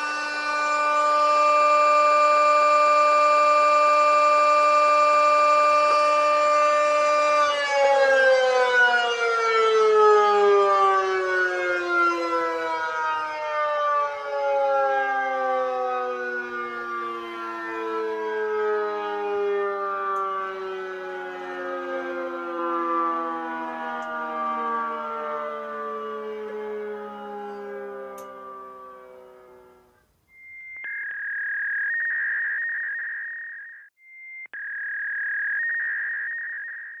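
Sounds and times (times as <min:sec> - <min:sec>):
high-pitched electronic tones: 0:00.0 - 0:03.0, 0:30.3 - 0:37.0
siren winding down: 0:00.0 - 0:30.0.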